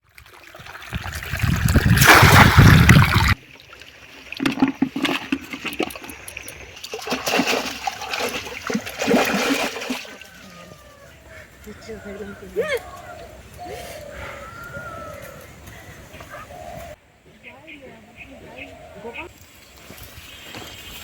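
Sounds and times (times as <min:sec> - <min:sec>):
water splashing and sloshing: 0:00.0 - 0:10.9.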